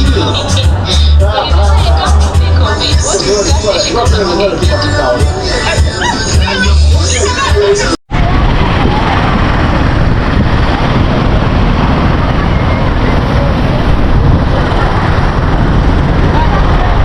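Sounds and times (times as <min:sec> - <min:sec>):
road and vehicle noise: 0:00.0 - 0:17.0
wind buffeting microphone: 0:07.7 - 0:17.0.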